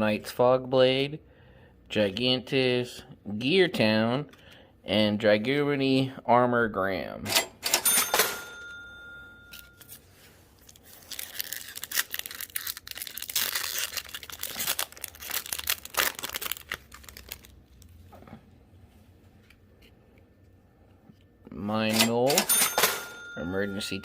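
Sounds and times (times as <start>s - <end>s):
foil wrapper tearing and crinkling: 10.6s - 17.9s.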